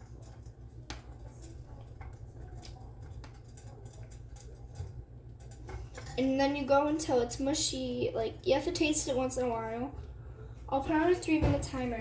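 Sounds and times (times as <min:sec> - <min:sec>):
spoon stirring macaroni: 0:00.0 - 0:07.0.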